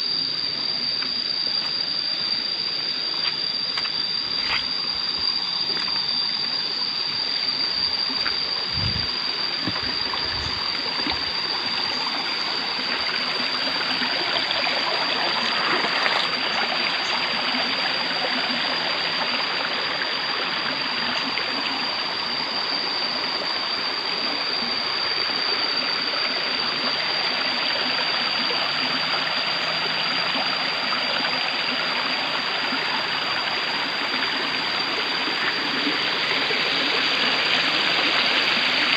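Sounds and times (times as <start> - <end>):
high-pitched whine: 0.0 - 38.9.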